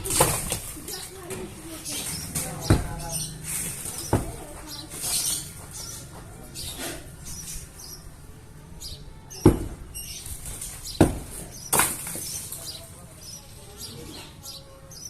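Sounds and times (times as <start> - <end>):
light scraping: 0.0 - 8.1
sharp impacts on masonry wall: 0.0 - 13.5.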